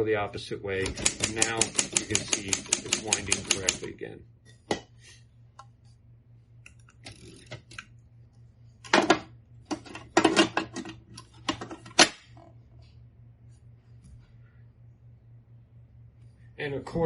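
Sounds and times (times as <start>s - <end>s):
manual typewriter clacking: 0.8s - 3.9s.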